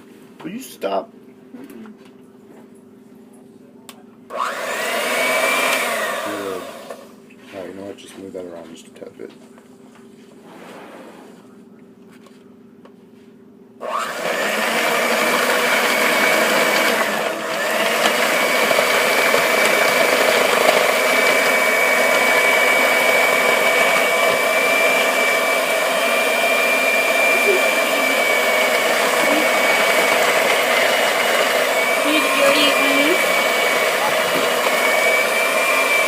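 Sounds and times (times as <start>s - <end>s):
electric mixer whining: 4.3s - 7.9s, 13.8s - 36.0s.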